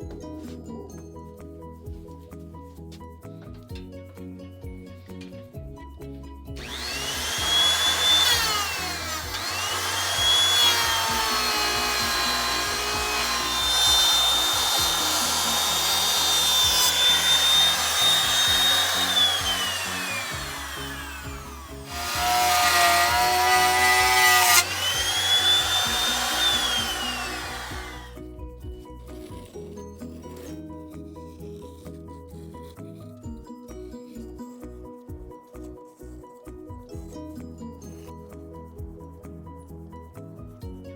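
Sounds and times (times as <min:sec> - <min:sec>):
background music: 0:00.0 - 0:40.9
power tool cutting wood: 0:06.6 - 0:28.2.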